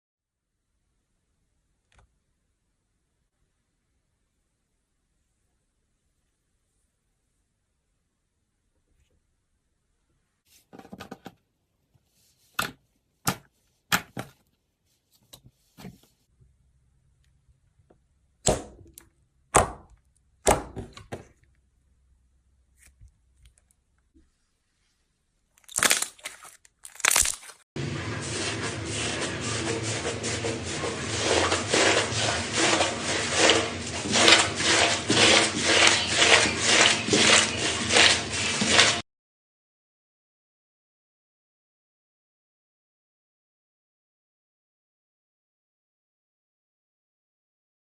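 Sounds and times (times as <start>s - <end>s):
slime tearing and crackling: 25.6s - 27.6s.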